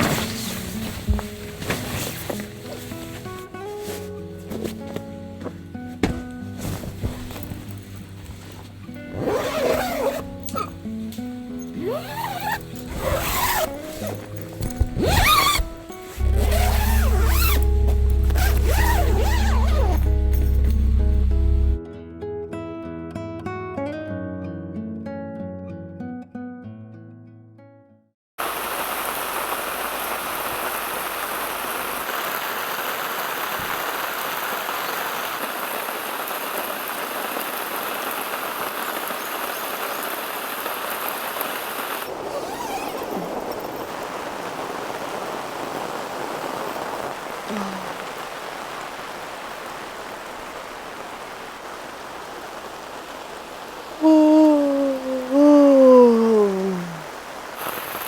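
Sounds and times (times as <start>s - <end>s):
heavy rain falling: 0.0s - 5.0s, 6.0s - 21.8s, 28.4s - 58.0s
person's voice: 47.5s - 48.0s, 54.0s - 57.1s.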